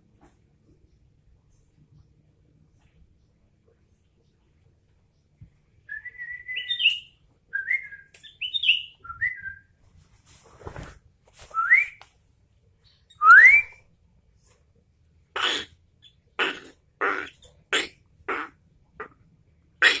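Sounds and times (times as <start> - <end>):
bird whistling phrases: 5.9 - 9.7, 13.1 - 13.8
bird harsh chattering: 15.3 - 19.2, 19.8 - 20.0.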